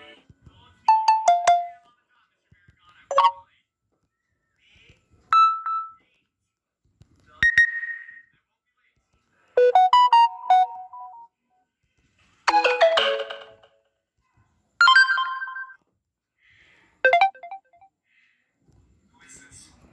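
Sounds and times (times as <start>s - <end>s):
phone notification chimes: 0.9s - 1.8s, 3.1s - 3.4s, 9.6s - 11.2s, 14.8s - 15.8s, 17.1s - 17.8s.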